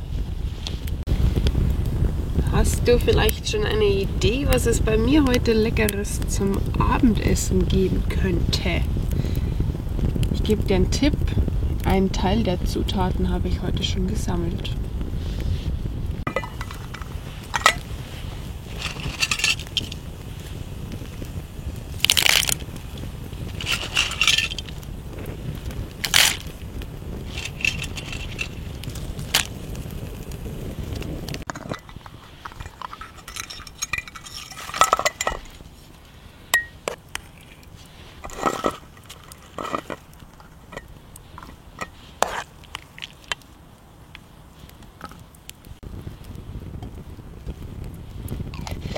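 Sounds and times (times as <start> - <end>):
camp cookware clinking and scraping: 16.3 - 20.5, 23.5 - 24.9, 27.2 - 29.5, 31.4 - 43.4, 44.9 - 45.2, 48.5 - 48.9.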